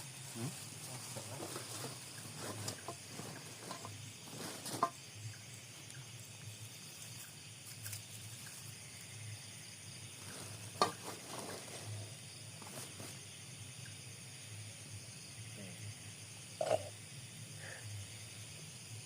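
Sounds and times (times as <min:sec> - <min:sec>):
crickets trilling: 0:00.0 - 0:19.0.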